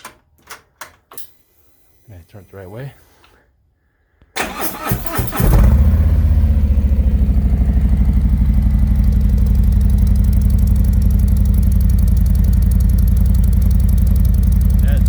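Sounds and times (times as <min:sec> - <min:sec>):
motorcycle engine starting: 0:04.4 - 0:15.0
motorcycle engine idling: 0:05.3 - 0:15.0.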